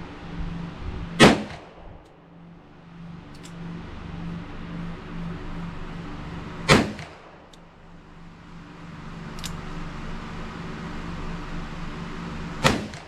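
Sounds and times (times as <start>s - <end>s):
steady low hum: 0.0s - 13.0s
faint distant gunshot: 1.2s - 1.8s, 6.7s - 7.3s, 12.6s - 13.0s
revolver shots with echo: 1.2s - 1.8s, 6.7s - 7.4s, 12.6s - 13.0s.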